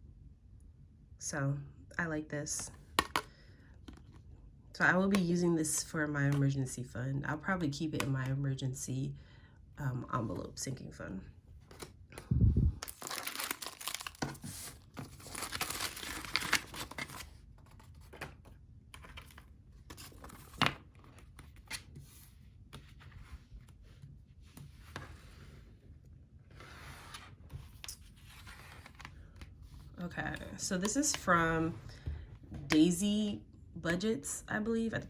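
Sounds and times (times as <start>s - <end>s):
packaging tearing and crinkling: 12.8s - 17.3s.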